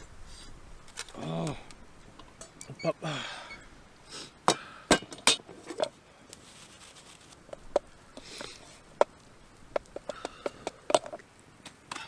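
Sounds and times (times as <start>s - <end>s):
soft rustle: 5.5s - 10.1s
sharp light clicks and taps: 7.5s - 12.0s.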